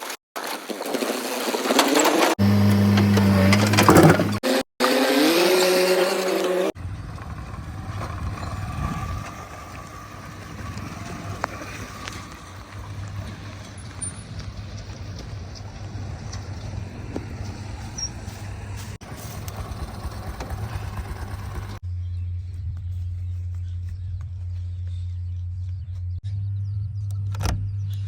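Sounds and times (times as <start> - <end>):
heavy diesel machinery rumbling: 6.8 - 21.8.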